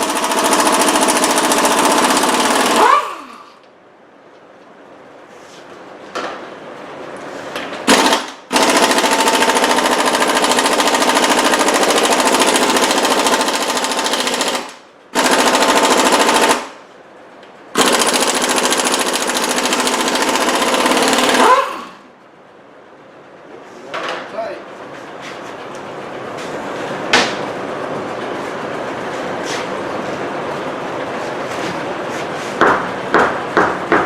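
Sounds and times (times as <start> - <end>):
impact wrench hammering: 17.8 - 22.0, 32.6 - 34.0.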